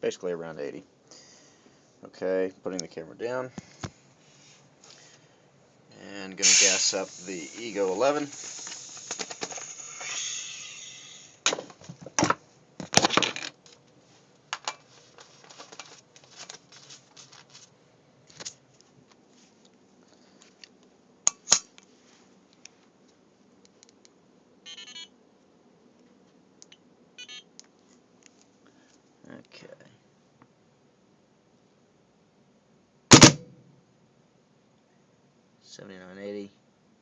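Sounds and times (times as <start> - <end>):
compressed air hissing: 6.4 - 11.4
clicks and knocks of handling: 14.5 - 17.7.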